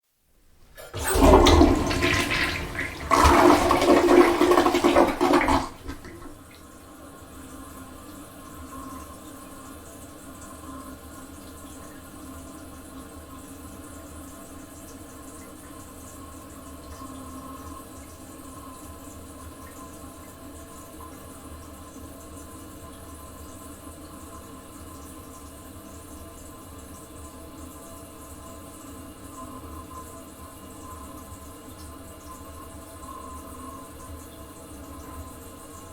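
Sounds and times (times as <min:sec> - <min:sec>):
toilet flushing: 0:00.6 - 0:07.3.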